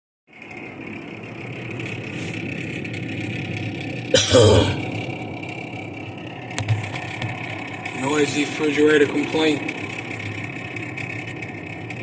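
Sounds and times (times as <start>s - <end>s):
refrigerator fan whining drone: 0.3s - 12.0s
loud burst of noise: 4.1s - 7.0s.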